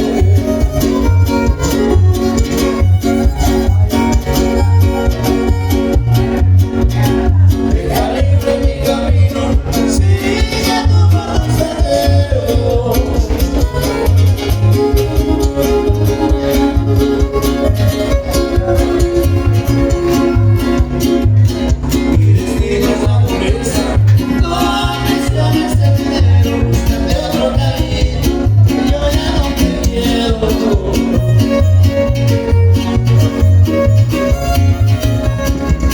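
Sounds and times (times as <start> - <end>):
latin music over sound system: 0.0 - 35.9
plucked guitar: 0.0 - 35.9
steady bass beat: 0.0 - 35.9
person singing: 6.9 - 14.5, 22.0 - 31.6.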